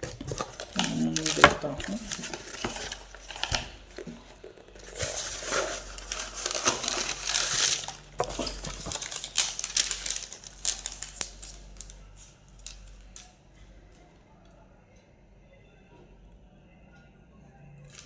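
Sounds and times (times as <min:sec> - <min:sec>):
packaging crinkling: 0:00.0 - 0:13.3.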